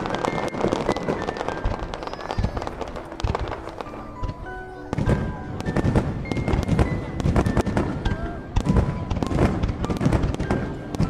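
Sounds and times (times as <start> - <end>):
fireworks crackling and bursting: 0.0 - 11.0
music playing: 0.0 - 11.0.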